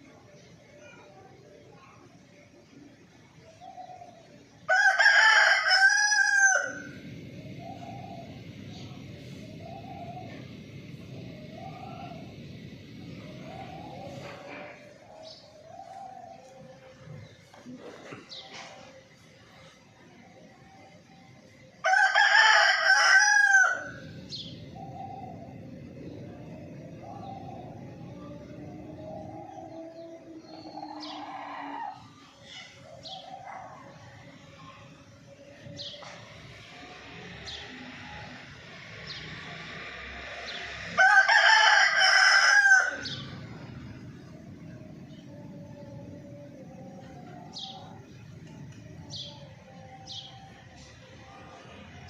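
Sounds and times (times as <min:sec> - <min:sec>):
rooster crowing: 0:04.7 - 0:08.5, 0:21.8 - 0:25.6, 0:26.4 - 0:32.2, 0:40.2 - 0:44.4.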